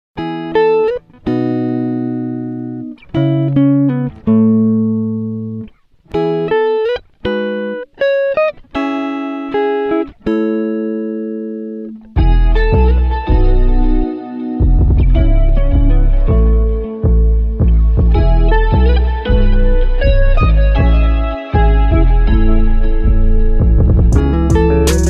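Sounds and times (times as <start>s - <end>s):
plucked string chords: 0.2s - 25.0s
bass-heavy music passage: 12.2s - 25.0s.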